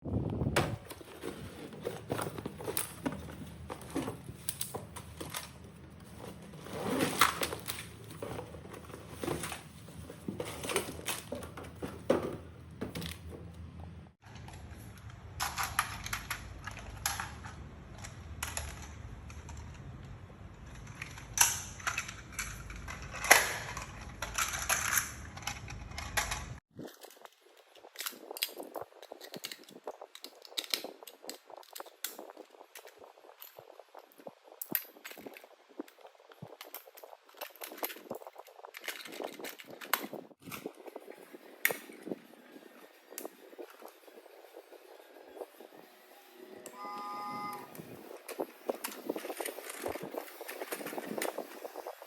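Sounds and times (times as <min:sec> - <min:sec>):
plastic packaging rustling: 0:00.7 - 0:13.4, 0:47.7 - 0:52.0.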